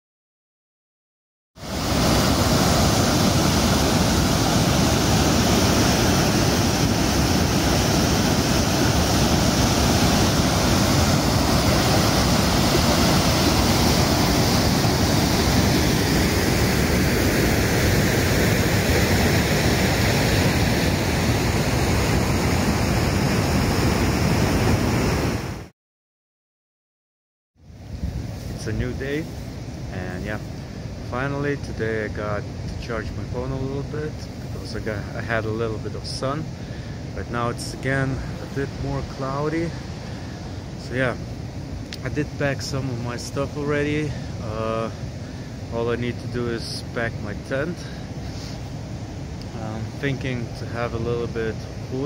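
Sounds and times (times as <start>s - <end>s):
rushing water: 1.6s - 25.7s, 27.7s - 52.0s.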